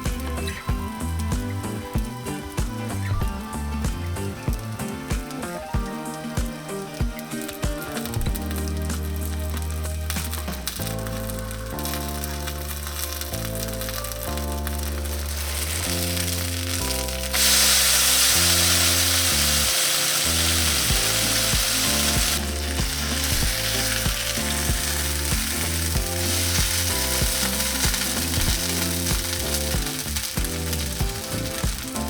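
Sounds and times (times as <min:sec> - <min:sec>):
background music: 0:00.0 - 0:32.0
batter sizzling in hot oil: 0:00.0 - 0:32.0.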